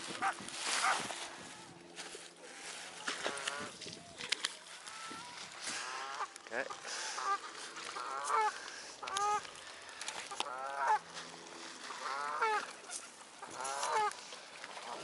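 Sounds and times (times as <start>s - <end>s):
geese honking: 4.7s - 9.6s, 10.2s - 15.0s.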